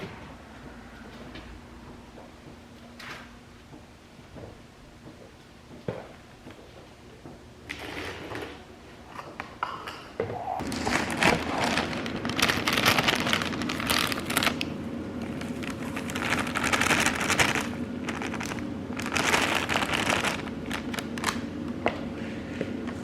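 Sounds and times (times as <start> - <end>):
steady low hum: 8.6 - 23.0
crackly rustling noise: 10.6 - 21.5.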